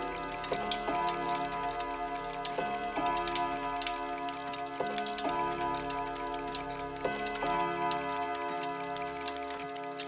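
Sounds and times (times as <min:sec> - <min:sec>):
mechanical clocks ticking: 0:00.0 - 0:10.0.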